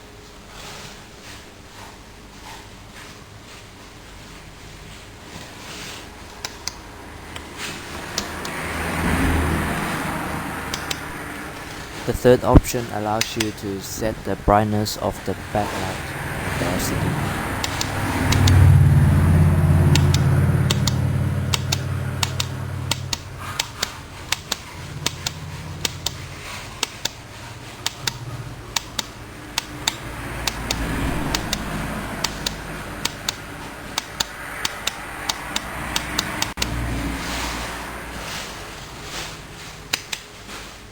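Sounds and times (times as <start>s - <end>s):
low hum: 6.2s - 26.6s
remote buttons clicking: 10.7s - 11.8s, 17.6s - 18.6s, 19.9s - 26.2s, 27.8s - 36.7s.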